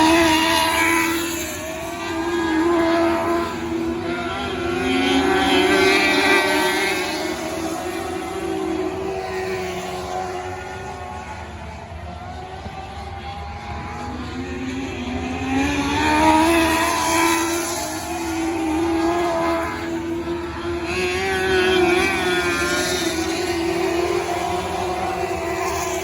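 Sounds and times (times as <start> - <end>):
racing car engines: 0.0 - 26.0.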